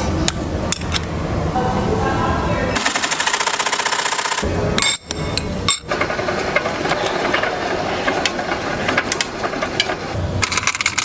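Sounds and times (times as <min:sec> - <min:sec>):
machine mechanism clattering: 0:02.8 - 0:11.0.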